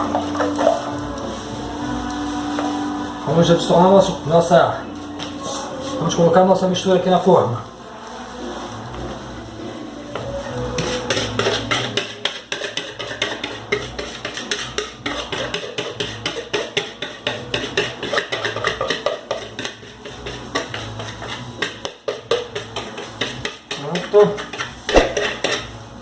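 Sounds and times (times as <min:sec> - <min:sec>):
utensil scraping a mixing bowl: 0:10.1 - 0:25.7.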